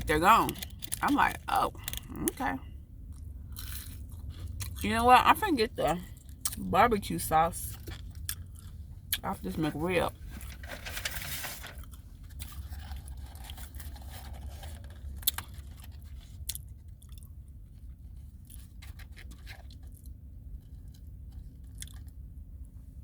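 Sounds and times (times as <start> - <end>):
person chewing with wet smacks: 3.1 - 4.8, 7.8 - 9.2, 21.4 - 22.3.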